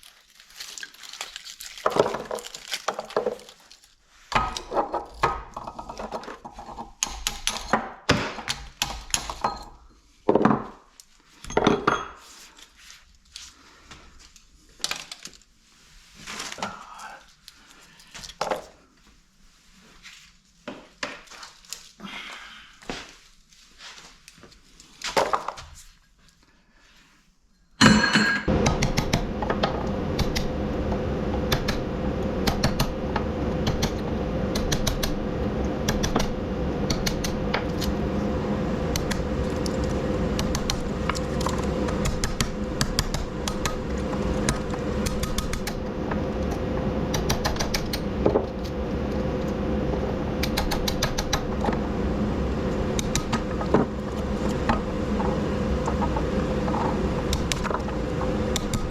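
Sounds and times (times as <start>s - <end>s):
power tool humming: 28.5s - 58.9s.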